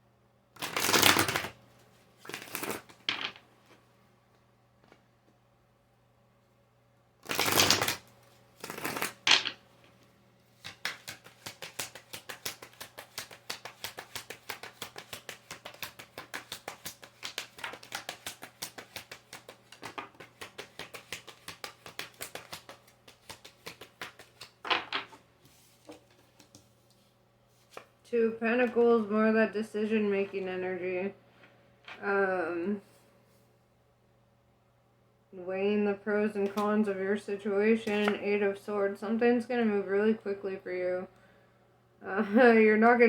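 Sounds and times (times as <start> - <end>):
rapid card clicks: 0.6 - 1.5, 2.3 - 3.3, 7.2 - 8.0, 8.6 - 9.6, 10.6 - 25.1
cards riffle shuffling: 0.6 - 1.6, 2.2 - 3.4, 7.2 - 8.0, 8.6 - 9.6, 10.6 - 26.6.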